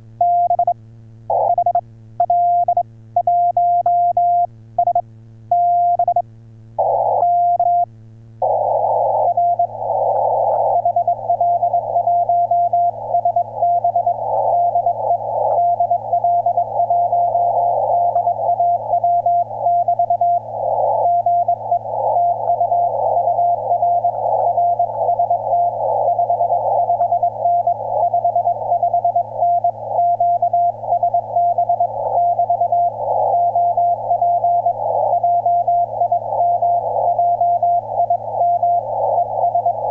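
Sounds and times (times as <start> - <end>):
radio band hiss: 8.4 - 39.9.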